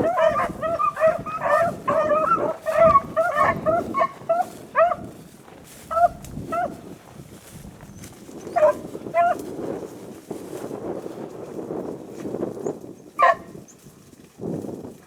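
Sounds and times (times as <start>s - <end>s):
beagles baying: 0.0s - 5.2s, 5.8s - 6.8s, 8.5s - 9.4s, 13.2s - 13.4s.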